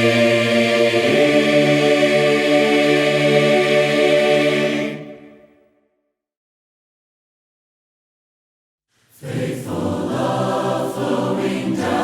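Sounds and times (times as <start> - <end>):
choir holding a chord: 0.0 - 5.7, 9.2 - 12.0.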